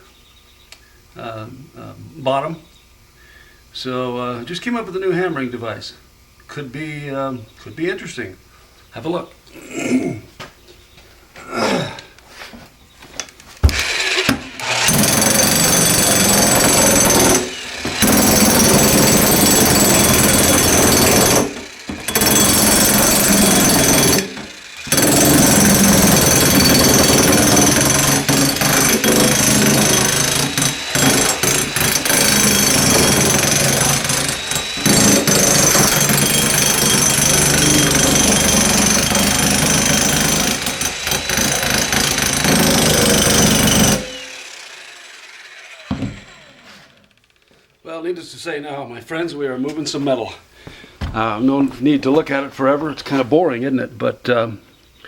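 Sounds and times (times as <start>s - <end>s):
jack hammer pounding metal: 13.7s - 47.6s.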